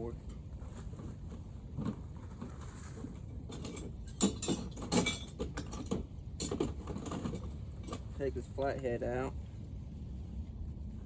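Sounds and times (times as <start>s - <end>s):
hand tools and engine parts clinking: 3.1s - 8.6s.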